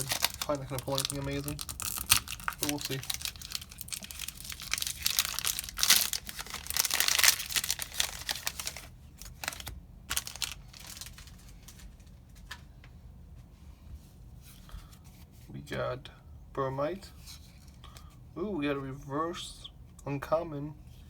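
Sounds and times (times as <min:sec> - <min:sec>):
foil wrapper crinkling and tearing: 0:00.0 - 0:12.1.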